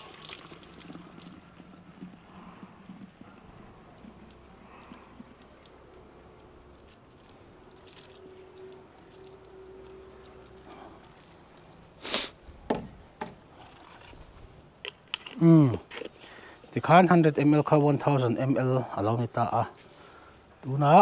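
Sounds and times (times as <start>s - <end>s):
water pouring into container: 0.0s - 12.0s.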